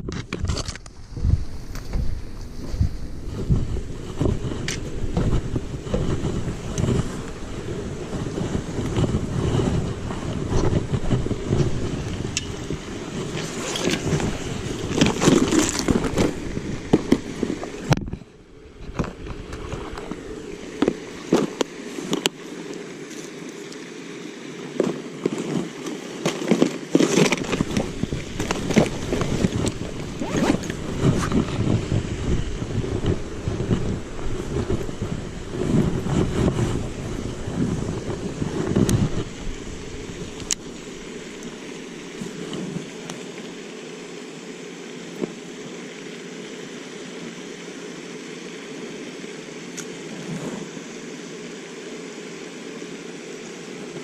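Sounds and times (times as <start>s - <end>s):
clicks and scrapes: 0.0s - 1.0s, 13.3s - 16.4s
wind buffeting microphone: 0.0s - 21.7s, 27.2s - 42.9s.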